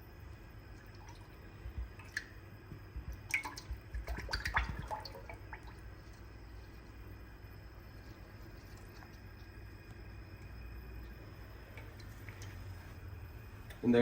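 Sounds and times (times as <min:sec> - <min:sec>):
small drips and splashes: 0:00.2 - 0:13.0.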